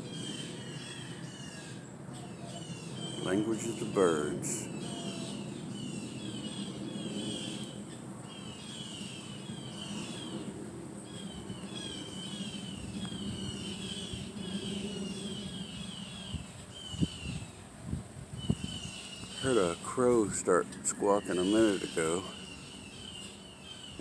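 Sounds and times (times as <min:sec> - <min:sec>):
songbirds chirping: 0:00.0 - 0:24.0
steady low rumble: 0:08.9 - 0:23.6.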